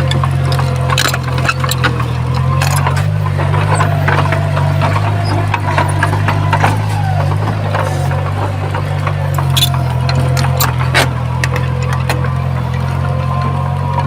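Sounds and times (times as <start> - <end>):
heavy diesel engine running: 0.0 - 14.0
sharp knocks and rattles: 0.0 - 14.0.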